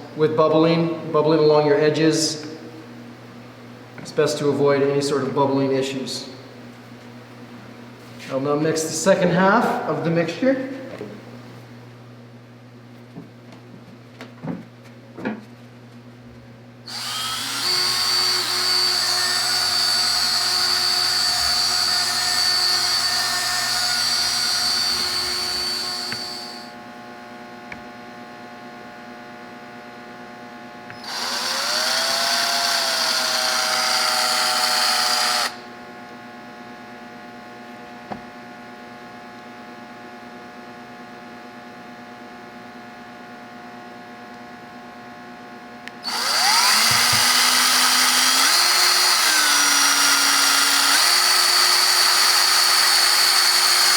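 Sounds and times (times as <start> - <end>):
power drill whining: 16.9 - 26.8, 30.9 - 35.7, 46.0 - 53.9.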